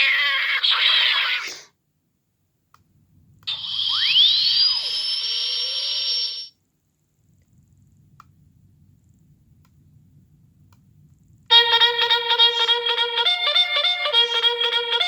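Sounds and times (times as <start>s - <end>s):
hissing effect with rising whistle: 3.5s - 6.5s.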